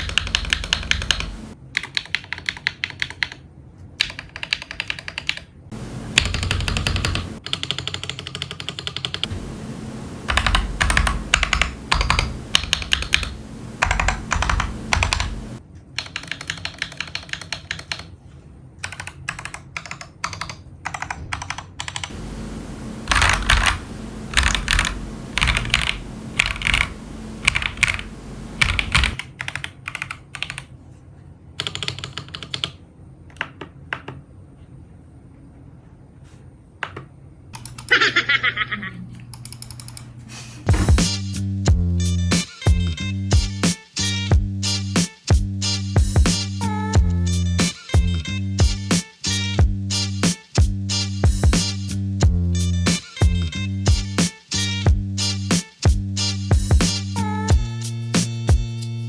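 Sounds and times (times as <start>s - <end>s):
mechanical keyboard typing: 0.0s - 3.4s, 4.0s - 9.3s, 10.2s - 18.2s, 18.8s - 22.2s, 23.1s - 30.7s, 31.6s - 34.2s, 37.6s - 38.0s, 39.3s - 40.1s.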